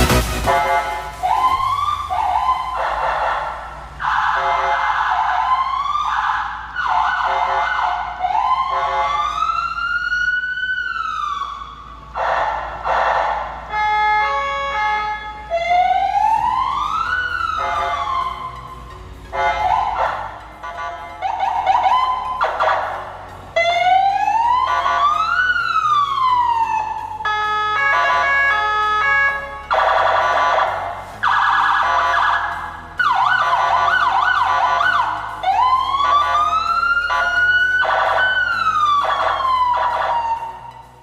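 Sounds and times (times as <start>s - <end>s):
siren stepped tones: 0.0s - 41.0s
siren wailing: 0.0s - 41.0s
electronic siren chirps and yelps: 23.6s - 40.5s.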